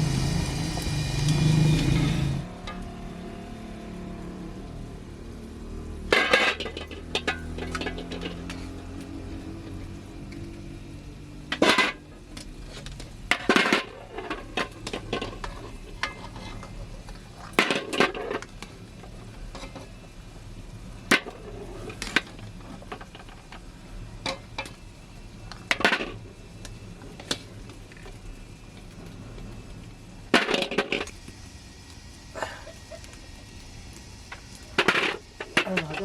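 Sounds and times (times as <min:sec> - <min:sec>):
faint sizzle: 0:00.0 - 0:36.0
utensil clinking against cookware: 0:06.1 - 0:08.8.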